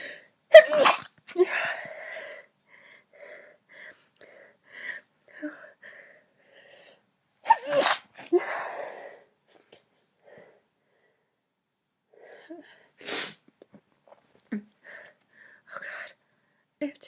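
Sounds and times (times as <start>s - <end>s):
woman sneezing: 0.5s - 1.1s, 7.5s - 8.4s
faint breaths: 1.6s - 7.1s, 14.8s - 16.7s.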